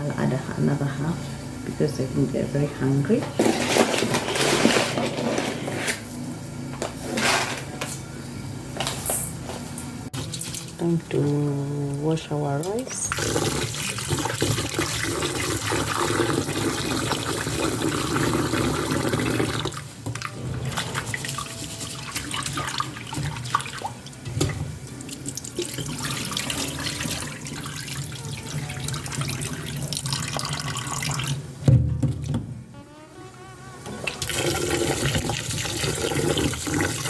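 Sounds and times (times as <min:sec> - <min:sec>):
tap water running and splashing: 0:12.6 - 0:20.3, 0:20.9 - 0:31.4, 0:34.1 - 0:37.0.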